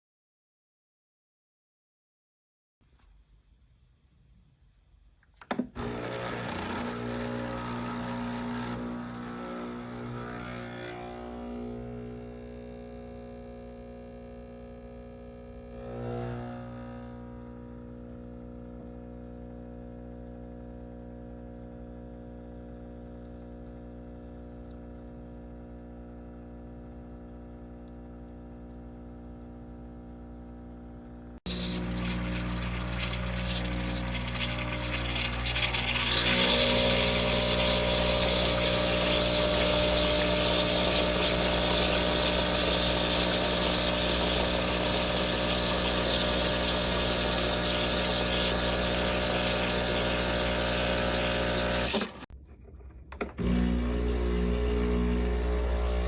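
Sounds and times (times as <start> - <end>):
espresso machine buzzing and hissing: 5.8 - 52.3, 53.4 - 56.0.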